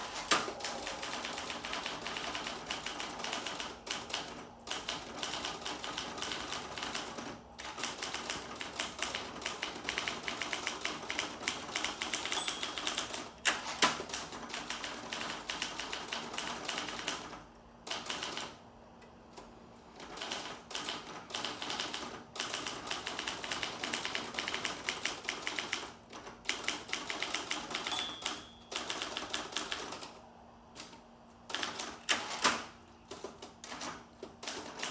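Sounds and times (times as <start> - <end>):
manual typewriter key strikes: 27.0 - 29.8.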